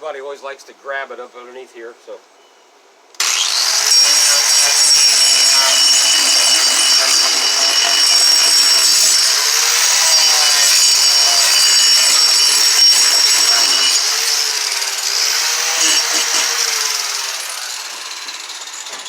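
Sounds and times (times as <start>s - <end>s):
power grinder grinding wood: 3.2s - 19.0s.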